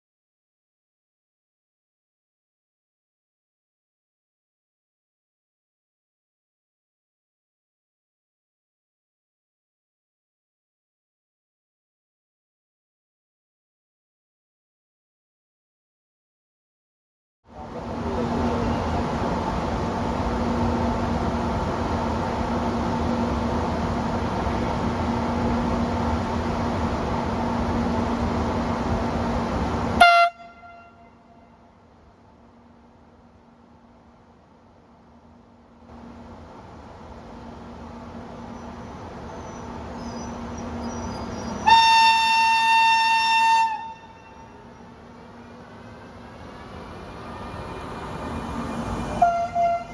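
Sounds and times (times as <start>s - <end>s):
electric locomotive humming: 17.5s - 49.9s
train rumble: 17.5s - 49.9s
train horn blast: 30.0s - 31.7s, 41.6s - 44.9s, 49.1s - 49.9s.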